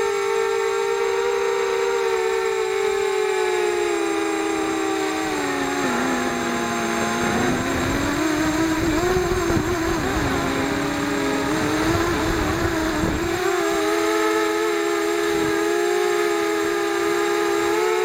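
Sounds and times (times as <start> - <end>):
quadcopter motors whining: 0.0 - 18.0
wind rush: 6.9 - 13.6.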